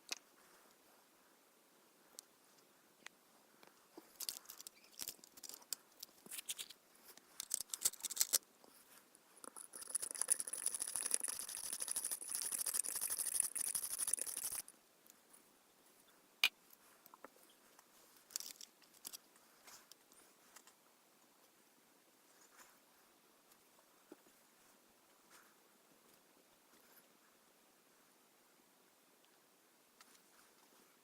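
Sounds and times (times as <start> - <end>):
scratching and rubbing: 4.0 - 14.7.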